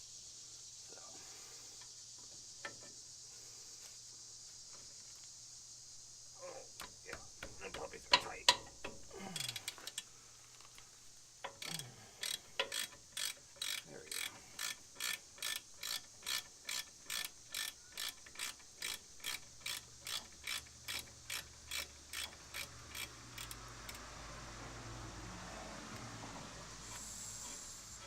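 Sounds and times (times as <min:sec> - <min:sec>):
hand ratchet clicking: 0:06.8 - 0:10.1, 0:11.4 - 0:24.2.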